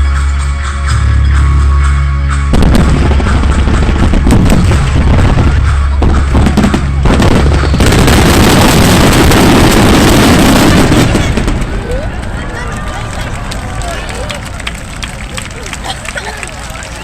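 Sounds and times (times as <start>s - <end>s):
music: 0.0s - 11.2s
fireworks bangs and crackle: 2.5s - 12.6s.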